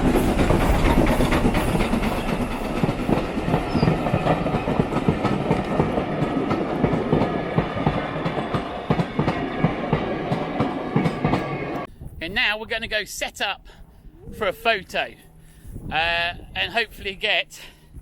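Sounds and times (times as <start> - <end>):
wheels clattering over track: 0.0 - 11.4
train wheels rumbling: 0.0 - 12.6.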